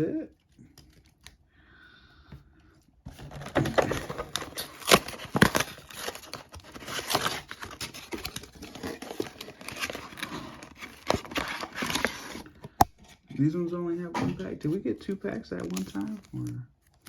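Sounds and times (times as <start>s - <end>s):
card packaging tearing and crinkling: 3.2s - 12.9s, 15.6s - 17.0s.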